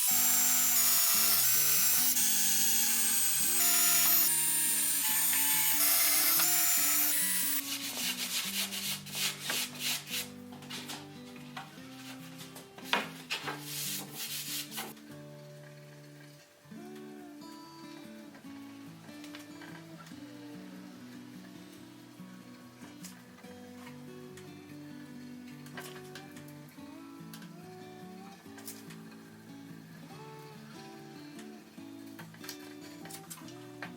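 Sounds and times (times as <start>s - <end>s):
sanding wood: 0.0s - 10.3s, 13.6s - 14.9s
acoustic guitar music: 0.0s - 33.9s.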